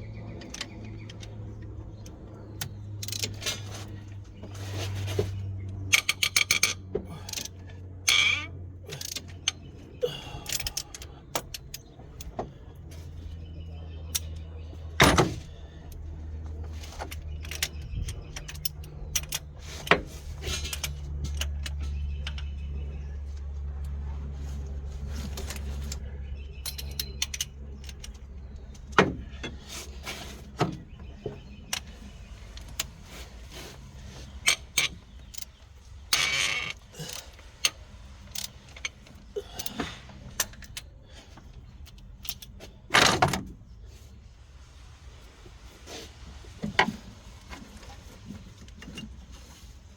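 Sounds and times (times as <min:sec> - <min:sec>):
steady low hum: 0:00.0 - 0:49.9
metal tools clicking and clinking: 0:05.9 - 0:12.4, 0:26.6 - 0:28.2, 0:34.4 - 0:40.9.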